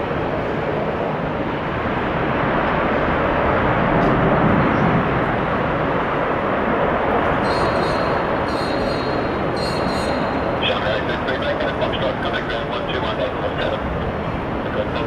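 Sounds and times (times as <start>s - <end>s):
gusty wind noise: 0.0s - 15.0s
jet engines roaring: 0.0s - 15.0s.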